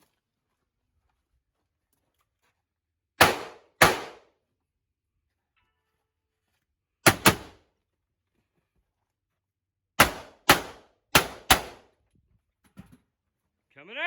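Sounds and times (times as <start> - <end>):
gunshots: 3.2 - 4.3, 7.0 - 7.6, 10.0 - 11.8.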